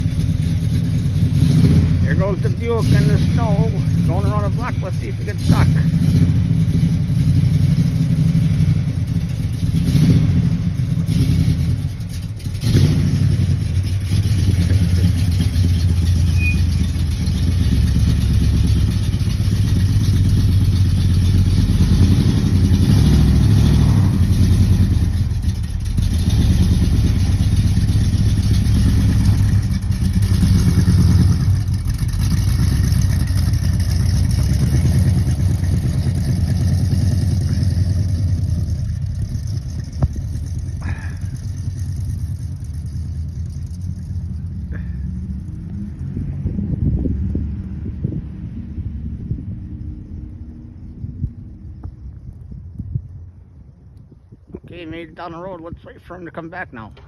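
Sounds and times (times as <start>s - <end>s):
car engine running: 0.0s - 47.4s.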